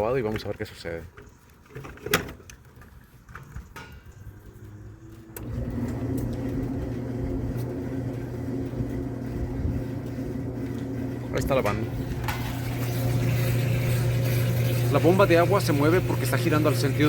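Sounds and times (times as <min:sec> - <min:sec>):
washing machine motor humming: 0:04.5 - 0:17.0.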